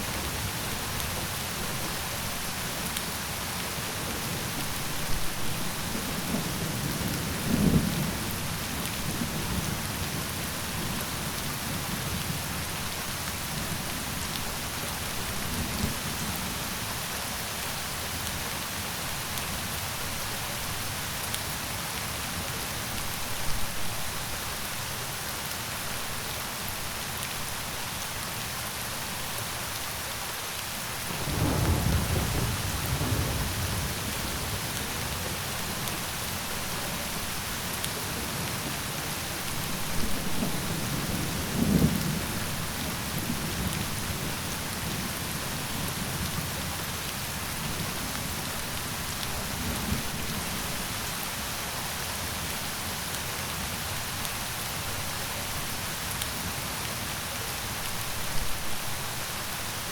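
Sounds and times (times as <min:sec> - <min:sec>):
steady rain: 0:00.0 - 0:59.9
thunder rumbling: 0:31.2 - 0:35.8.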